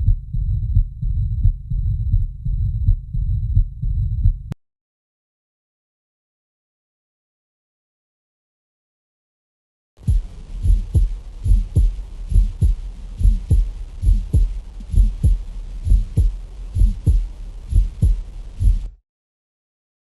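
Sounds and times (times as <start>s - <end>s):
heartbeat through stethoscope: 0.0s - 4.6s, 10.0s - 19.0s.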